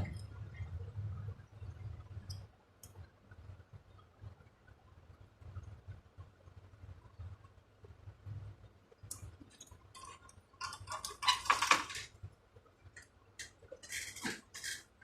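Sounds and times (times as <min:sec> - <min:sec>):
small tools clicking and clinking: 0:13.0 - 0:14.9
tools scraping and clattering: 0:13.4 - 0:14.9.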